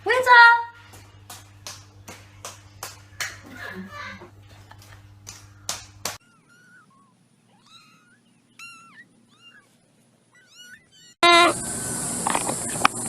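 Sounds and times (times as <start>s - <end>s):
cat meowing: 6.2s - 11.5s.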